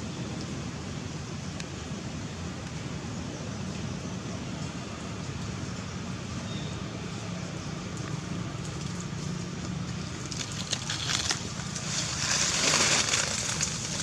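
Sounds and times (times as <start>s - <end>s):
crackling and rustling: 7.9s - 14.0s.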